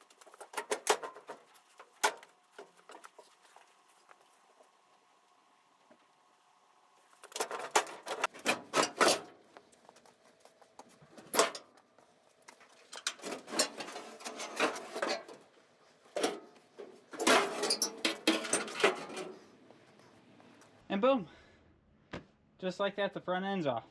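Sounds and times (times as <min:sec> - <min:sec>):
metal clanks and rattles: 0:00.0 - 0:03.3, 0:07.2 - 0:09.4, 0:11.2 - 0:11.8, 0:12.6 - 0:15.4, 0:16.2 - 0:19.4.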